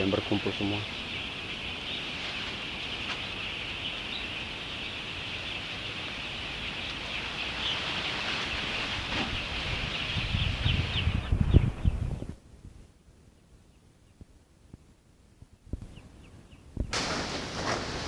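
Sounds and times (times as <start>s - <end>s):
low rumble of wind: 0.0s - 18.0s.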